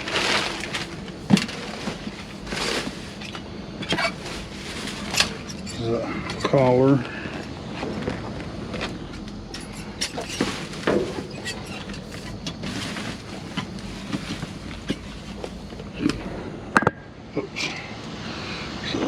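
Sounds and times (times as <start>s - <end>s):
packaging rustling and crinkling: 0.0s - 5.8s, 7.4s - 15.9s
low background hum: 0.0s - 19.0s.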